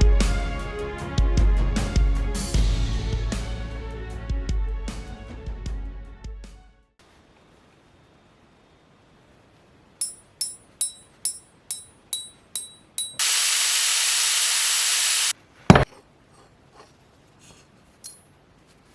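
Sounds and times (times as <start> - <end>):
ringing metallic clinks: 10.0 - 13.3
steady hiss: 13.2 - 15.4.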